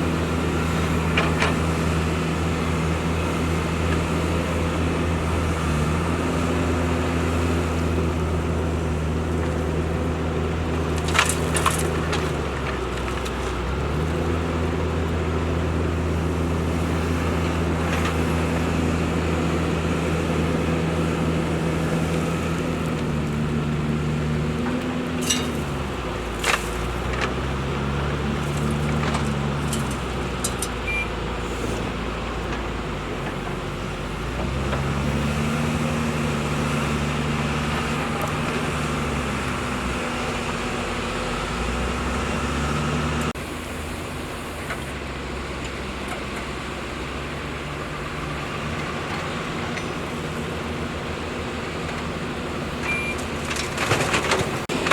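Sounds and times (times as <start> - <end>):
excavator diesel engine running: 0.0 - 54.9.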